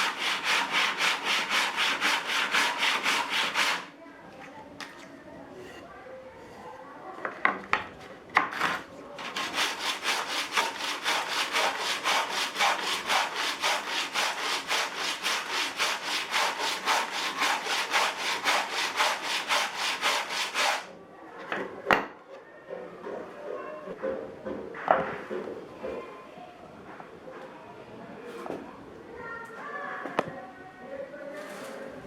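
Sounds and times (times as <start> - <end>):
sanding block knocks: 0.0 - 3.9, 8.5 - 20.9
sandpaper scrubbing wood: 0.0 - 3.9, 9.2 - 20.9.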